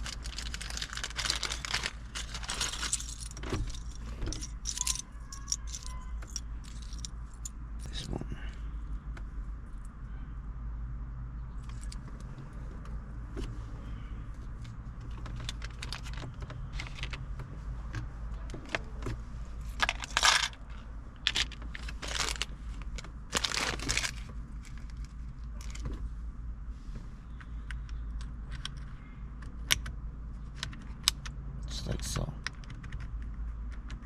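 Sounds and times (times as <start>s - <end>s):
rustling scrapes: 0.0s - 7.0s.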